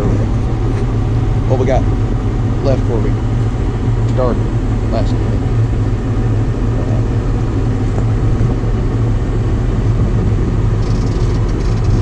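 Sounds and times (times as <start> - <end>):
farm machine engine droning: 0.0 - 12.0
light ticks and rattles: 10.8 - 12.0.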